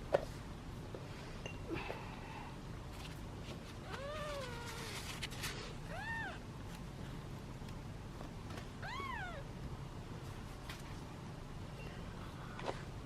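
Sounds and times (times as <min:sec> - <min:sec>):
kitten meowing: 0:03.9 - 0:05.0, 0:05.9 - 0:06.4, 0:08.8 - 0:09.5.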